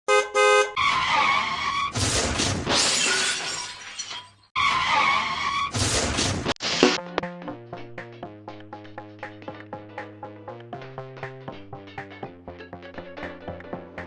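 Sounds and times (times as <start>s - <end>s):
car skidding and shattering: 0.8s - 6.5s.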